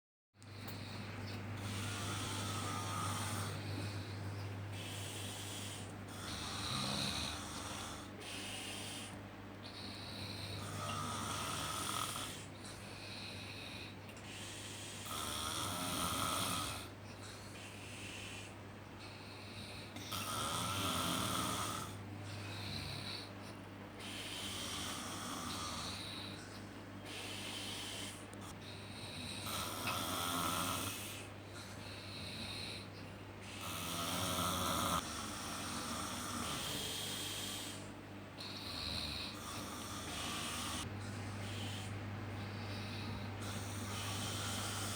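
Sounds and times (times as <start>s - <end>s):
steady low hum: 0.4s - 44.9s
person snoring: 1.6s - 13.9s, 14.7s - 16.9s, 19.4s - 23.3s, 24.0s - 26.4s, 29.0s - 31.3s, 33.6s - 44.9s.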